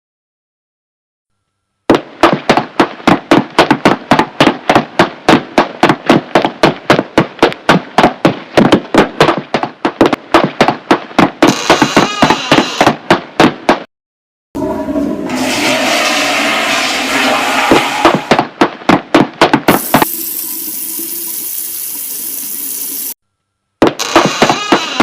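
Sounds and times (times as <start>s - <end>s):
hissing noise: 14.6s - 18.3s, 19.7s - 23.2s.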